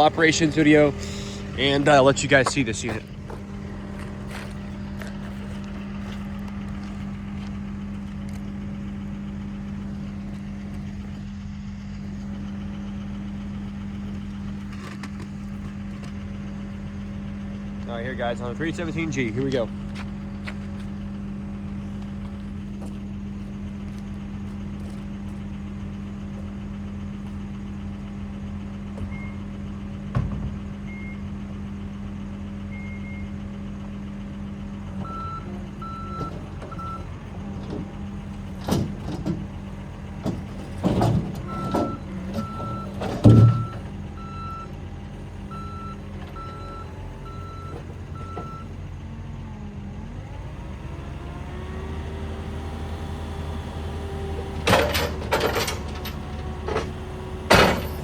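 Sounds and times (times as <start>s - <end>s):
diesel engine running: 0.0s - 58.0s
machine clunks and knocks: 28.8s - 31.5s, 35.0s - 44.8s, 54.1s - 58.0s
reverse alarm beeping: 29.0s - 29.4s, 30.9s - 31.3s, 32.7s - 33.4s, 35.0s - 37.1s, 41.5s - 44.7s, 45.5s - 48.7s.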